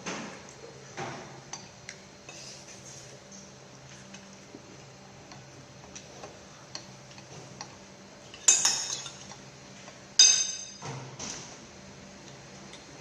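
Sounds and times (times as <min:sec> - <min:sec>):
tableware clinking: 0:08.4 - 0:09.3, 0:10.2 - 0:10.9.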